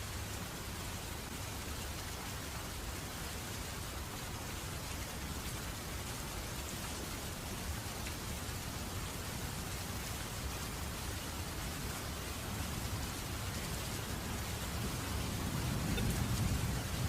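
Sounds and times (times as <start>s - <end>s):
steady rain falling: 0.0s - 17.0s
distant thunder rumbling: 14.8s - 17.0s.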